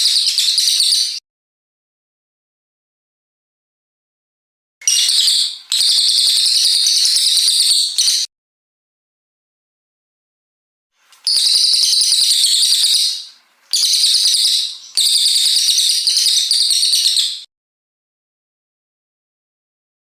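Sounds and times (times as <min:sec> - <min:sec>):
bird singing high-pitched bursts: 0:00.0 - 0:01.2, 0:04.8 - 0:08.3, 0:11.0 - 0:17.5.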